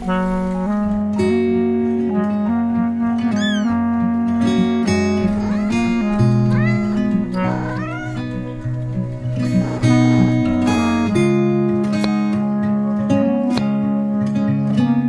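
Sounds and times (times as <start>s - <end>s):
acoustic guitar music: 0.0s - 15.0s
cat meowing: 3.3s - 3.8s, 5.1s - 11.2s.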